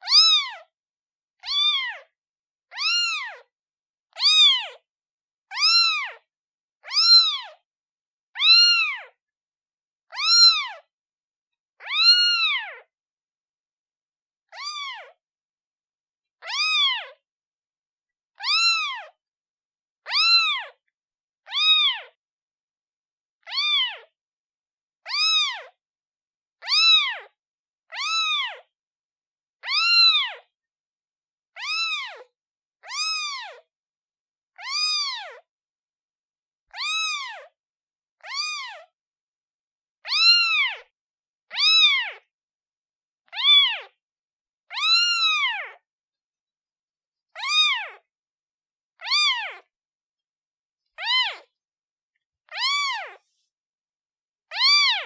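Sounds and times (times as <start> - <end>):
kitten meowing: 0.0 - 0.7, 1.4 - 2.1, 2.7 - 3.5, 4.1 - 4.8, 5.5 - 6.2, 6.8 - 7.6, 8.4 - 9.2, 10.1 - 10.8, 11.8 - 12.9, 14.5 - 15.2, 16.4 - 17.2, 18.4 - 19.2, 20.0 - 20.8, 21.5 - 22.2, 23.4 - 24.1, 25.1 - 25.8, 26.6 - 28.7, 29.6 - 30.5, 31.6 - 33.6, 34.6 - 35.4, 36.7 - 37.5, 38.2 - 38.9, 40.0 - 40.9, 41.5 - 42.3, 43.3 - 44.0, 44.7 - 45.8, 47.3 - 48.1, 49.0 - 49.7, 50.9 - 51.6, 52.4 - 53.5, 54.5 - 55.0.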